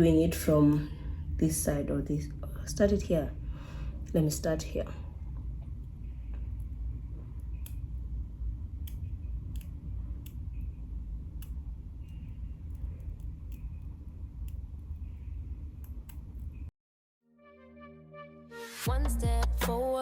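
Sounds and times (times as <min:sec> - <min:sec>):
steady low rumble: 0:00.0 - 0:16.7
scissors snipping: 0:06.4 - 0:08.1, 0:08.7 - 0:16.6.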